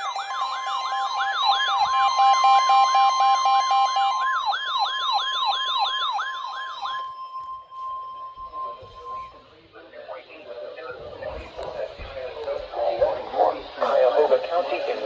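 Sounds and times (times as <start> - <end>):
yelping siren alarm: 0.0 - 9.7.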